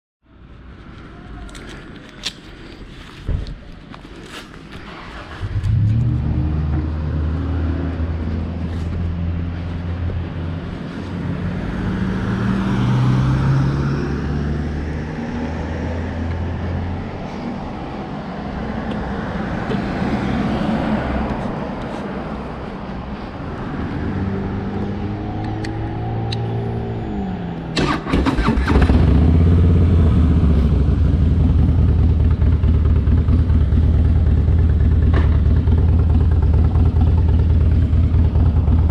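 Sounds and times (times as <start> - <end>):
engine running: 24.5 - 38.9.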